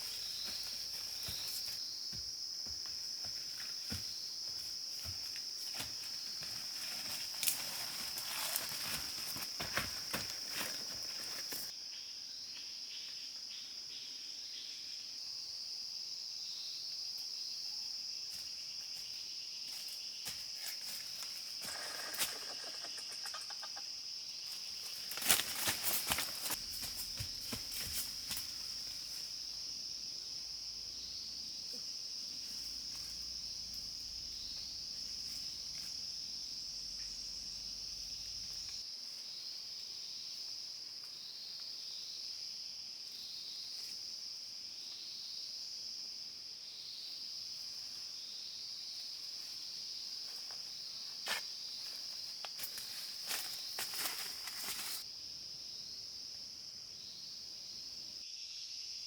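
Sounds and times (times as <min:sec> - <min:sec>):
insects droning high-pitched: 0:00.0 - 0:59.0.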